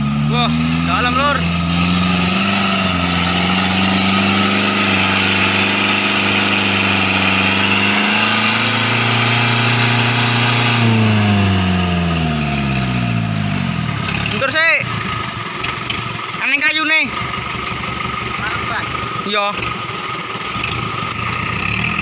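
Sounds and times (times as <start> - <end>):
truck engine working hard: 0.0 - 22.0.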